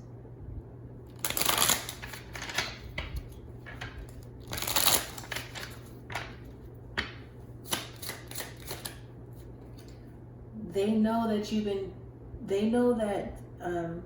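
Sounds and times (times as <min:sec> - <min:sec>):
cards shuffling: 0:01.1 - 0:10.0.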